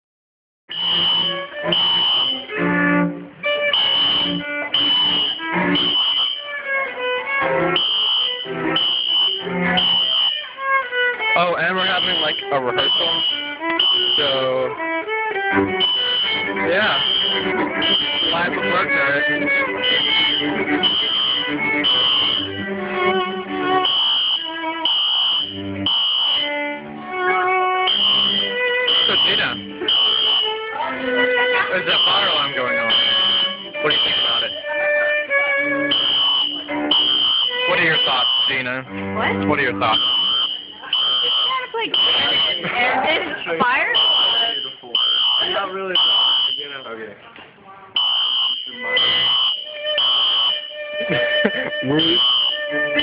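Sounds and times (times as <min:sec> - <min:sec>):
fire alarm horn pulses: 0:00.7 - 0:03.1, 0:03.7 - 0:06.4, 0:07.4 - 0:10.6, 0:11.7 - 0:14.5, 0:15.5 - 0:22.6, 0:23.8 - 0:26.4, 0:27.9 - 0:30.6, 0:31.6 - 0:34.6, 0:35.8 - 0:38.7, 0:39.9 - 0:42.6, 0:44.0 - 0:46.8, 0:48.0 - 0:50.7, 0:51.8 - 0:53.0
bowed strings playing: 0:01.3 - 0:24.9, 0:25.5 - 0:40.9, 0:50.6 - 0:53.0.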